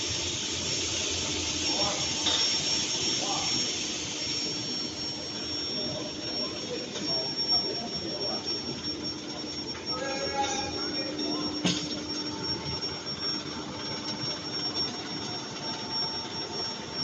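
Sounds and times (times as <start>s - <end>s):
machinery hiss: 0.0s - 13.9s
high-pitched machine whine: 0.0s - 17.0s
low machine hum: 0.0s - 17.0s
faint voices: 3.0s - 13.1s.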